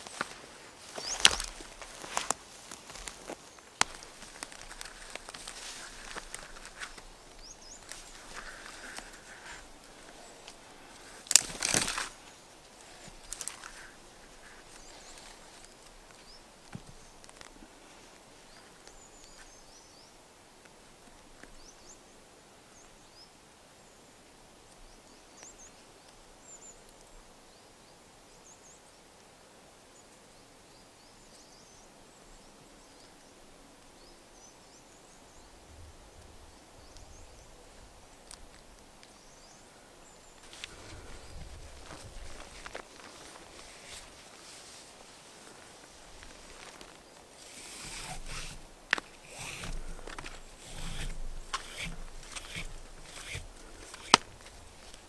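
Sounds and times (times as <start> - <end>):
small birds chirping: 0.0 - 17.5, 30.7 - 55.0.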